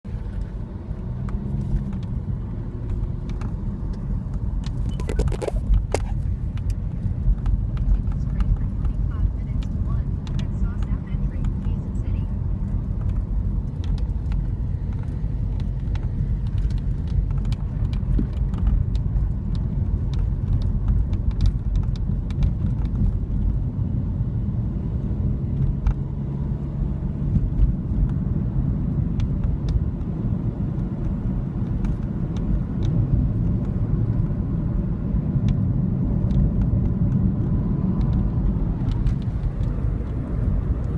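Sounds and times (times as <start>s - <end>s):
road and engine rumble in car: 0.0s - 40.9s
light clicks and ticks: 2.8s - 11.8s, 12.6s - 23.6s, 35.4s - 40.9s
dashboard rattle: 4.7s - 6.3s.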